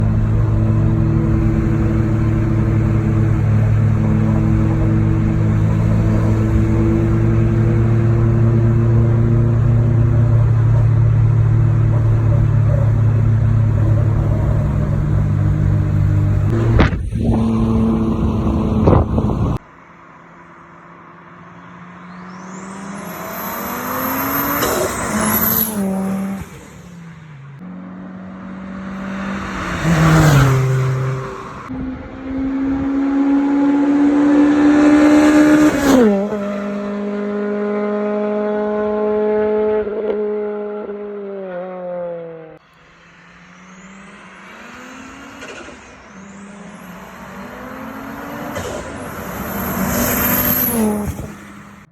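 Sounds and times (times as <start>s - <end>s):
engine revving: 0.0s - 19.6s, 21.2s - 51.9s
rally car engine running: 0.0s - 19.6s
car passing at speed: 0.0s - 51.9s.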